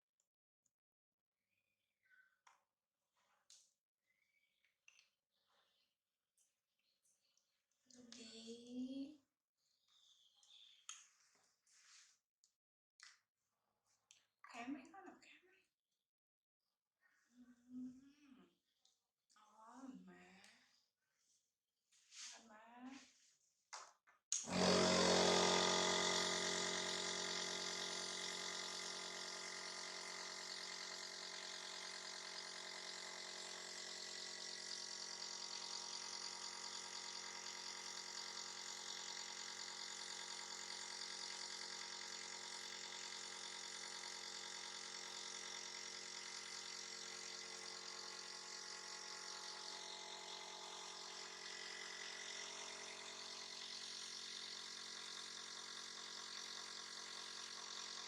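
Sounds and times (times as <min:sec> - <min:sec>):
compressor motor humming and hissing: 0:24.4 - 0:58.0.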